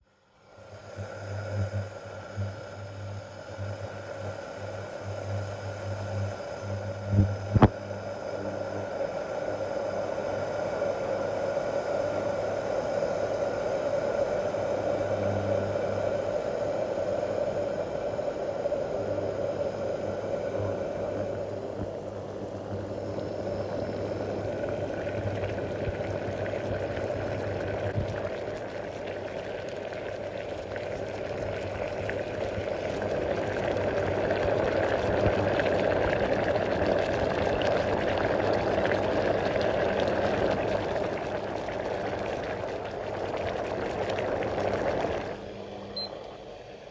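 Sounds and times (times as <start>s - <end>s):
water boiling: 0.4s - 46.9s.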